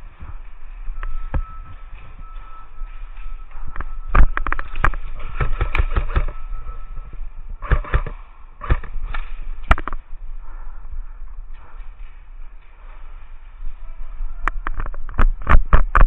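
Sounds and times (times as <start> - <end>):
airsoft guns firing: 4.5 - 6.4, 7.6 - 9.8.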